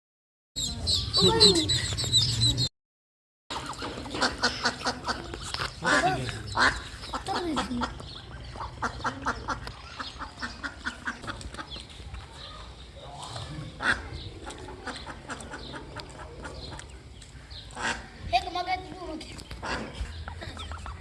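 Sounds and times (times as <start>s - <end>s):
ducks quacking: 3.5s - 11.8s, 13.0s - 18.4s, 19.5s - 21.0s.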